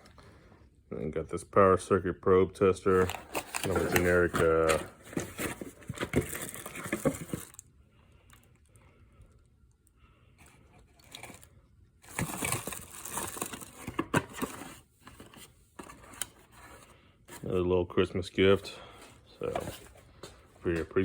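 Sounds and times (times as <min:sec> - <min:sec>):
packaging rustling and clicking: 0:02.9 - 0:07.6, 0:10.4 - 0:17.4.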